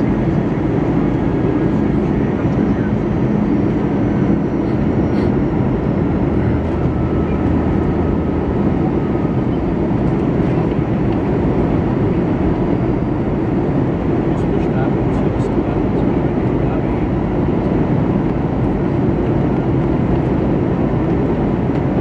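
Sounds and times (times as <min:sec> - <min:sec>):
airplane cabin engine rumble: 0:00.0 - 0:22.0.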